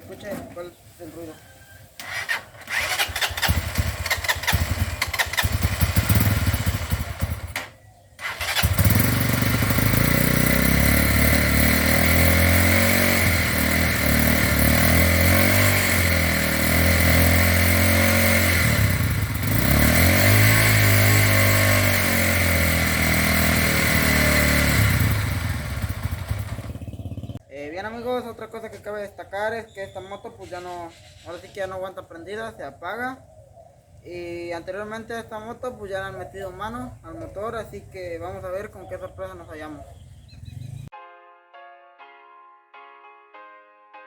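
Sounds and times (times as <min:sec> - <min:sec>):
motorcycle engine sputtering and running: 0:02.0 - 0:27.4.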